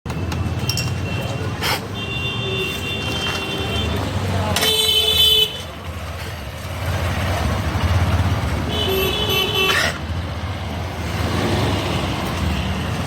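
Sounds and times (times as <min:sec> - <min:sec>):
road traffic: 0:00.0 - 0:13.0
vehicle horn honking: 0:04.6 - 0:05.7, 0:08.7 - 0:09.8.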